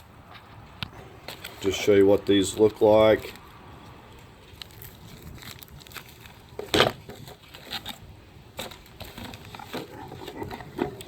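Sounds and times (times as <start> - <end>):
packaging rustling and crinkling: 4.2 - 11.0.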